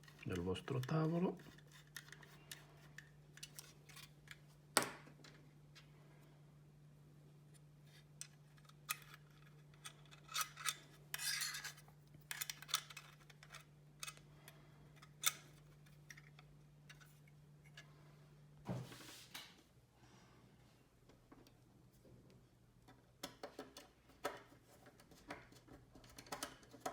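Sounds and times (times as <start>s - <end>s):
screwdriver clicks and scrapes: 0.0s - 4.4s, 8.0s - 14.2s.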